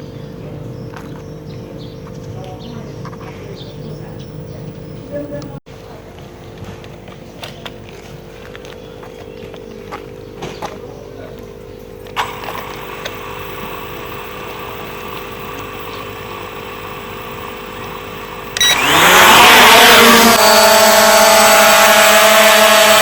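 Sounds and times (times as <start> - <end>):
drone propeller whine: 12.2 - 23.0
click: 18.5 - 18.9.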